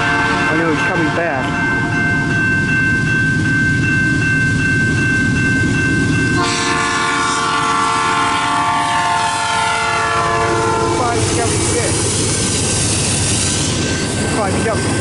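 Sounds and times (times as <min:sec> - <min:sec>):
locomotive rumbling: 0:00.0 - 0:15.0
locomotive air horn: 0:06.4 - 0:11.7.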